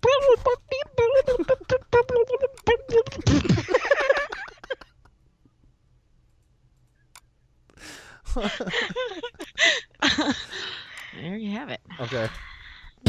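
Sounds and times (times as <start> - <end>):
person making warbling mouth sounds: 0.0 - 3.6.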